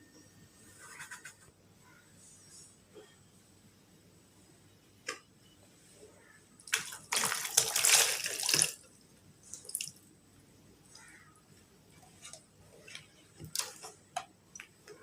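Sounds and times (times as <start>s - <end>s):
water running: 6.7s - 8.9s.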